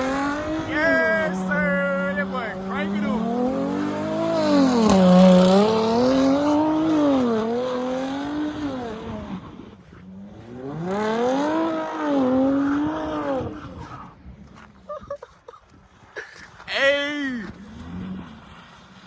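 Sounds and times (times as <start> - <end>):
car engine revving hard: 0.0 - 14.1.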